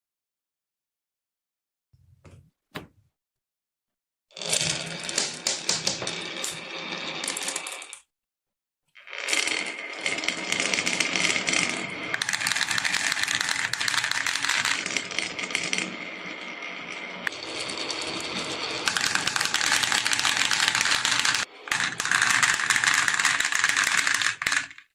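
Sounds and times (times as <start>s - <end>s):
marbles clattering down wooden run: 4.4s - 8.0s, 9.2s - 16.4s, 17.2s - 24.9s.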